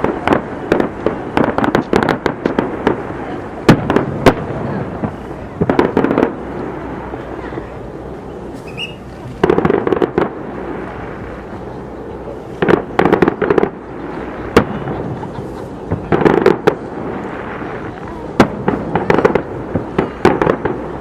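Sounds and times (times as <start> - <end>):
fireworks bangs and crackles: 0.0 - 21.0.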